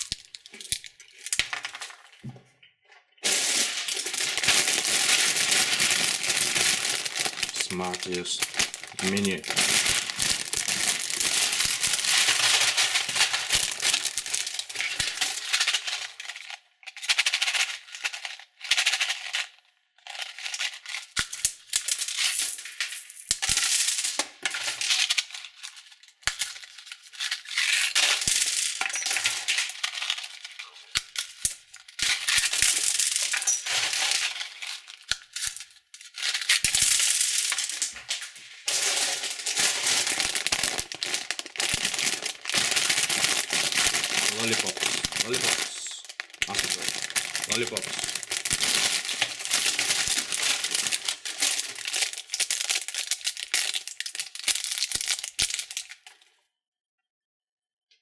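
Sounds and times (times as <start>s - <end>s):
plastic wrappers crinkling: 0.0s - 2.4s, 3.2s - 22.8s, 23.4s - 56.3s
sweets rattling together: 3.2s - 19.3s, 26.4s - 56.0s.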